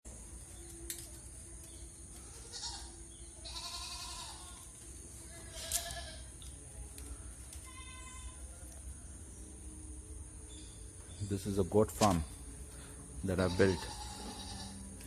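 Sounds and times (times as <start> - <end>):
goats bleating: 2.3 - 4.6, 5.2 - 6.3, 7.6 - 8.4, 13.3 - 15.0.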